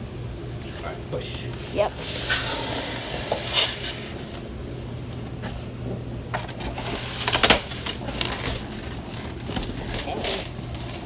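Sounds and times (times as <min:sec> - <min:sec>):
steady low hum: 0:00.0 - 0:11.0
scraping and rustling cardboard: 0:06.4 - 0:11.0.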